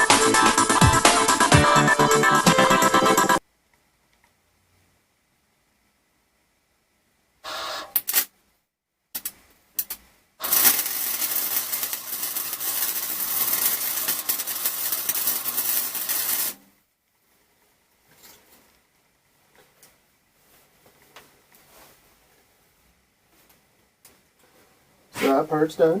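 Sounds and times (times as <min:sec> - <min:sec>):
low electrical hum: 0:03.4 - 0:26.0
welding arc crackling: 0:09.2 - 0:16.6.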